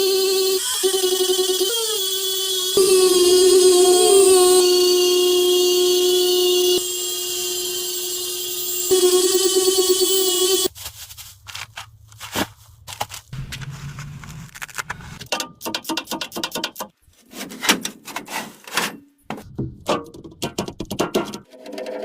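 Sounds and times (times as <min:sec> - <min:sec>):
clicks scrapes and crackles: 0:10.8 - 0:15.3
steady whine: 0:13.4 - 0:15.3.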